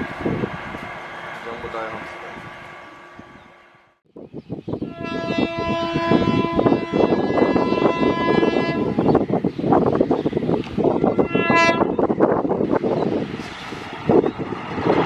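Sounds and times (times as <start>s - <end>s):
locomotive horn blasts: 4.8s - 9.0s, 11.2s - 12.0s.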